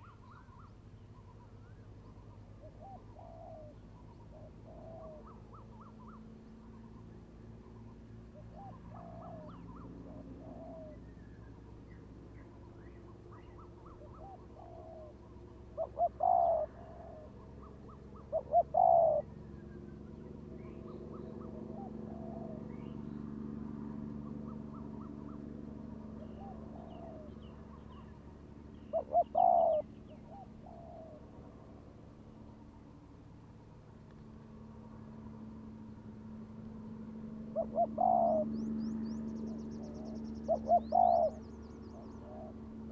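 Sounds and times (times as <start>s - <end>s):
low steady hum: 0.0s - 42.9s
small birds chirping faintly: 0.0s - 42.9s
doves cooing: 2.6s - 6.3s, 8.4s - 11.4s, 13.3s - 31.8s, 37.4s - 42.9s.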